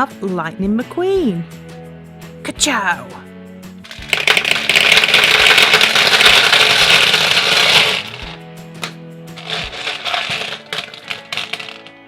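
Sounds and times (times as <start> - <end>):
background music: 0.0 - 12.0
handling rustles and clicks: 3.8 - 12.0
plastic packaging crinkling: 3.9 - 8.4, 9.4 - 11.9.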